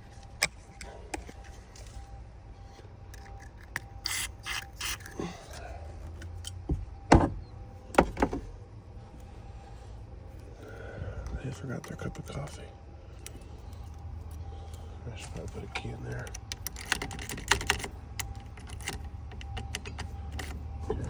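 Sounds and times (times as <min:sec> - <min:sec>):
lock pick clicking and scraping: 0:03.1 - 0:06.7, 0:16.1 - 0:21.0.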